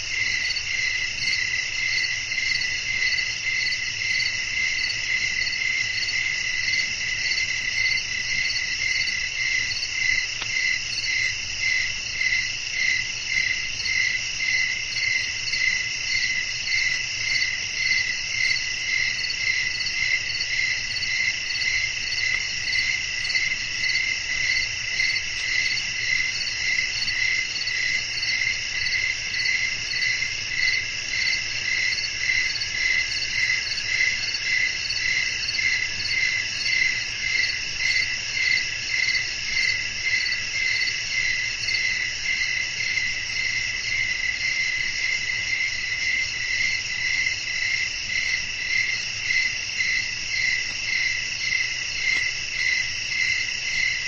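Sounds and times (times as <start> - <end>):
crickets chirping: 0.0 - 54.0.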